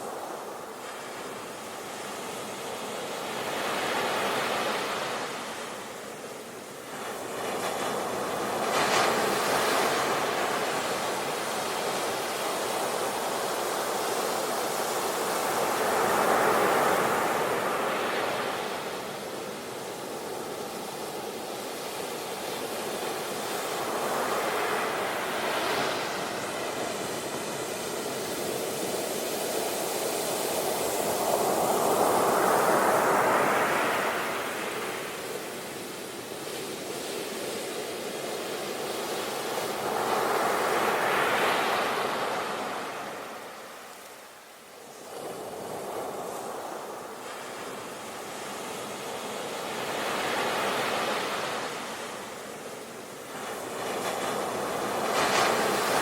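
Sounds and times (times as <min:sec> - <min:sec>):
sea waves breaking on shore: 0:00.0 - 0:56.0.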